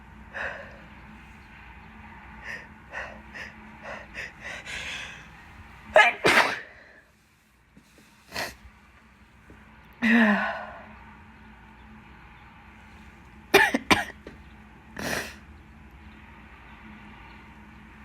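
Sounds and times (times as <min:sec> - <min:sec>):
woman sneezing: 0:06.0 - 0:06.7.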